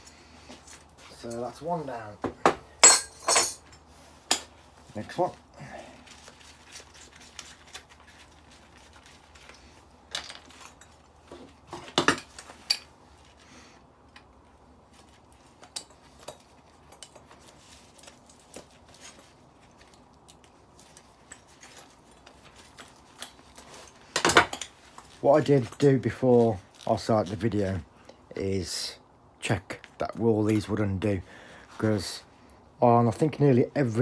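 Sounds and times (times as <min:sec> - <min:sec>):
metal parts clinking and knocking: 0:02.8 - 0:03.8, 0:10.1 - 0:11.0.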